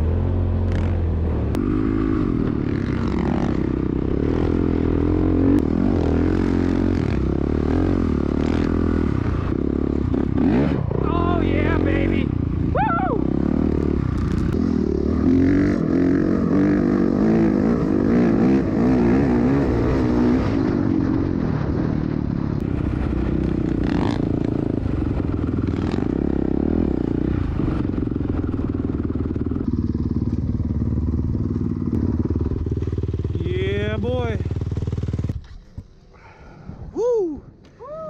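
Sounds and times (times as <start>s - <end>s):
dirt bike engine revving: 0.0s - 22.1s, 22.8s - 35.4s
wind rumbling on microphone: 15.8s - 32.8s.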